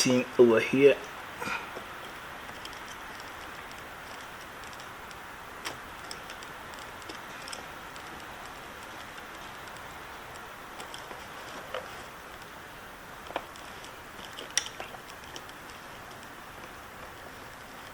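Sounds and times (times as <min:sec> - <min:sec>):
steady hiss: 0:00.0 - 0:17.9
small sharp clicks: 0:13.2 - 0:17.9.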